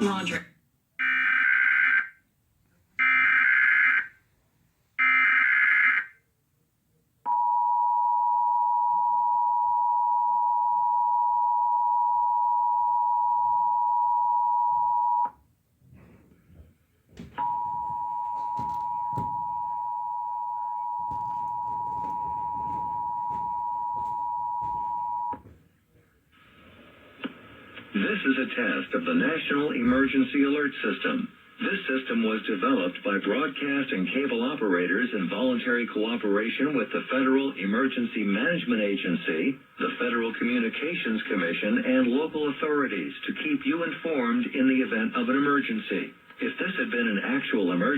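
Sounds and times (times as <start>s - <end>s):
background noise: 0.0s - 47.9s
two-tone attention signal: 17.4s - 25.4s.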